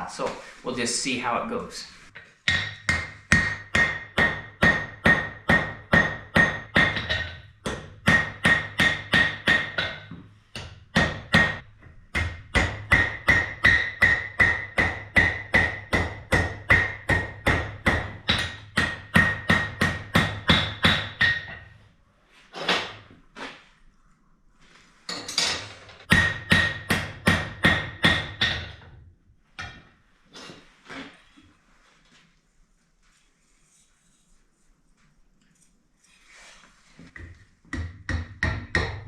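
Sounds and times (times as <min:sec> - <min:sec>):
hammer striking metal on anvil: 0:02.5 - 0:21.6, 0:26.1 - 0:28.8, 0:37.8 - 0:39.0.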